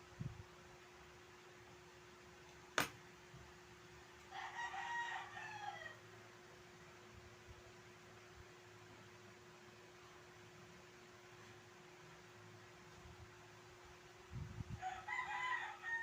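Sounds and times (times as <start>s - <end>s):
faint steady hum: 0.0s - 16.0s
rooster crowing: 4.2s - 6.1s, 14.8s - 16.0s.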